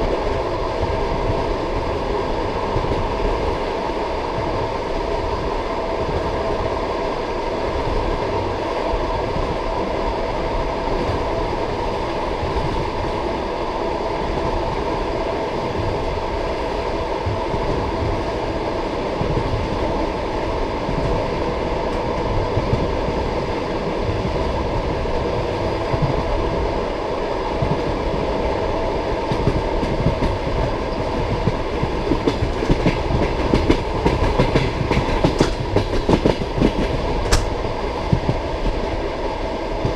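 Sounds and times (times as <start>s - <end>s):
train wheels rumbling on rails: 0.0s - 39.9s
wheels clacking over rail joints: 32.7s - 37.9s.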